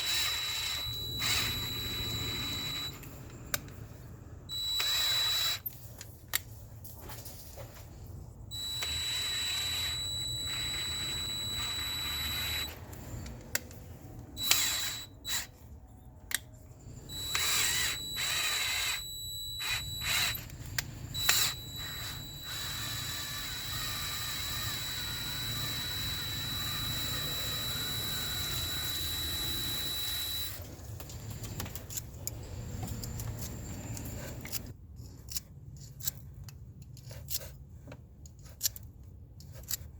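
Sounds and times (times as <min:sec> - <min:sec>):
power drill whining: 0:00.0 - 0:03.7, 0:04.5 - 0:05.7, 0:08.5 - 0:13.3, 0:14.4 - 0:15.5, 0:16.8 - 0:30.6.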